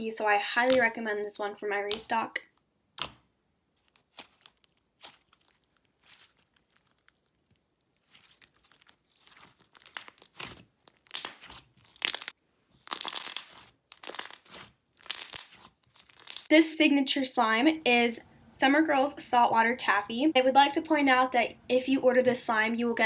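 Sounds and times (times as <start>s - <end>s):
slime crackling and popping: 3.8s - 16.5s.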